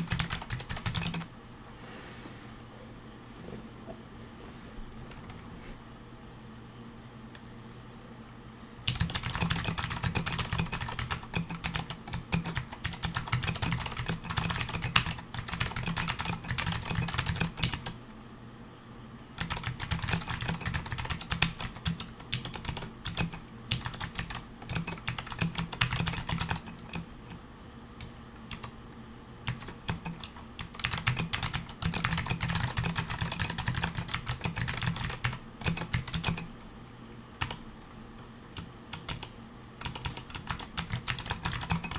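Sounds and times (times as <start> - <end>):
mechanical keyboard typing: 0.0 - 1.3, 8.9 - 18.0, 19.4 - 27.4, 28.0 - 28.7, 29.4 - 36.5, 37.4 - 37.6, 38.6 - 41.9.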